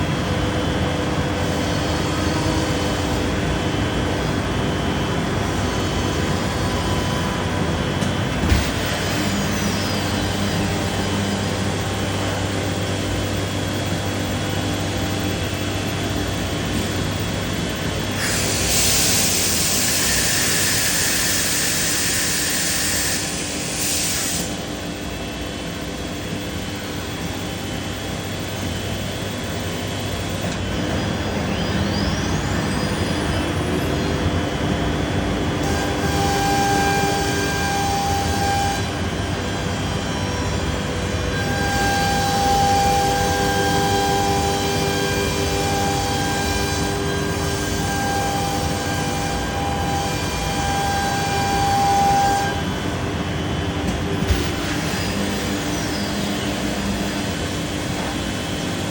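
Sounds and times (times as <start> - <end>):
rising machine whine: 0.0 - 23.7, 24.4 - 58.9
router milling wood: 8.2 - 24.7.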